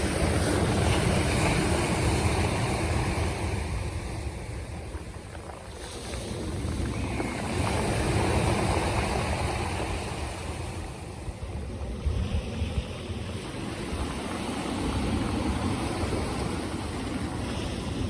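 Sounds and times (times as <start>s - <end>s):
waves washing onto shore: 0.0s - 18.0s
wind buffeting microphone: 0.0s - 18.0s.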